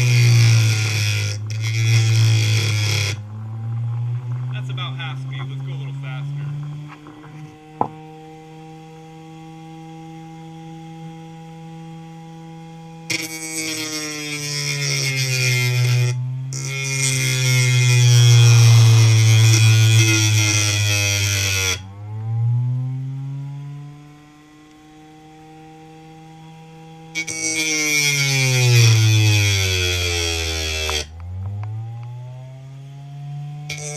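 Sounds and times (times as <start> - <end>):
rock grinding on sandpaper: 0.0 - 5.8, 13.1 - 21.8, 27.2 - 31.1, 33.7 - 33.9
spindle motor whine: 0.0 - 33.9.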